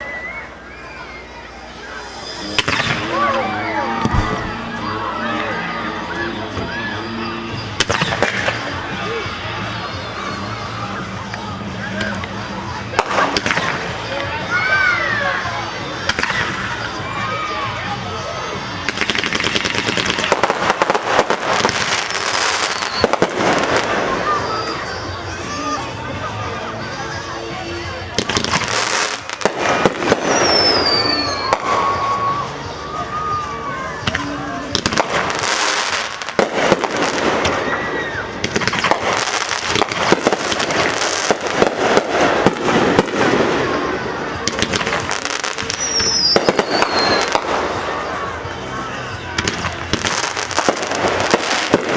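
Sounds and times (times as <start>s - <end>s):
fireworks crackling: 0.6s - 51.9s.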